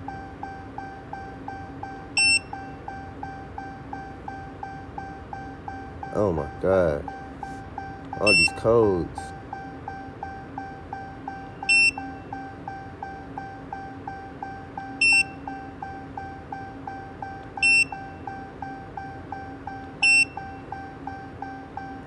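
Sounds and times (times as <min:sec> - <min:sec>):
high electronic warning beeps: 0:00.1 - 0:22.0
faint low hum: 0:02.9 - 0:11.8.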